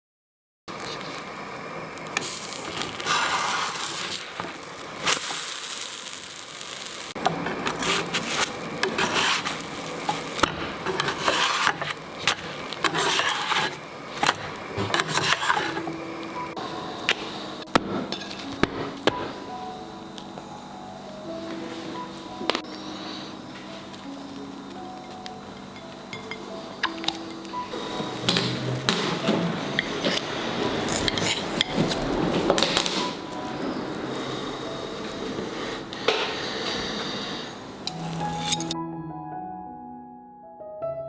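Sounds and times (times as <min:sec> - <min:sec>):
utensils scraping against cookware: 0:02.6 - 0:05.4, 0:07.2 - 0:18.7, 0:25.2 - 0:38.8.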